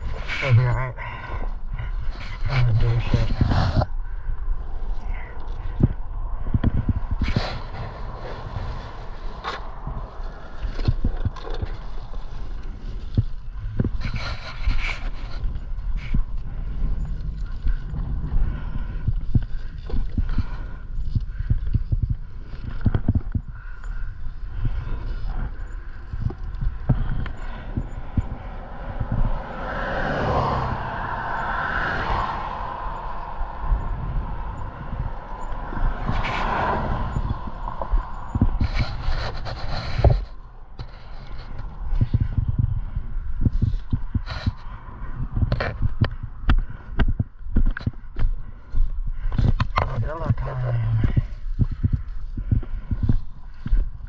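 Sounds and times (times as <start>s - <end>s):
low rumble on microphone: 0.0s - 54.0s
vehicle passing: 27.4s - 39.1s.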